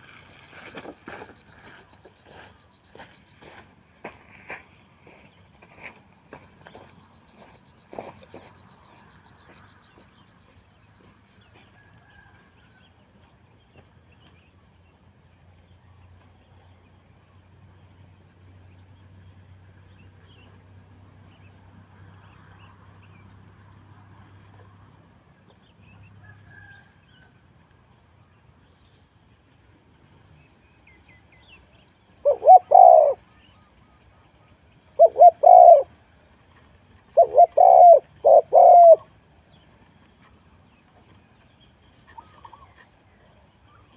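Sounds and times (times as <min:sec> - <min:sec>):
dove cooing: 0:32.2 - 0:33.4, 0:34.9 - 0:36.0, 0:37.1 - 0:39.1.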